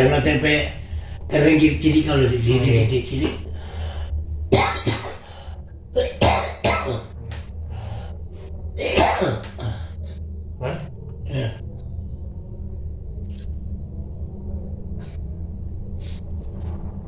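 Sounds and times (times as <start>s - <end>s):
person coughing: 4.6s - 5.2s, 6.0s - 7.1s, 8.8s - 10.0s.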